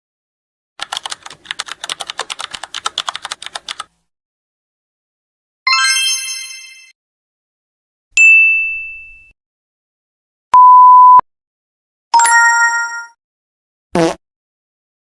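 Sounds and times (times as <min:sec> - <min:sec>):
bright bell ding: 0:08.2 - 0:09.3
steady beep: 0:10.6 - 0:11.2.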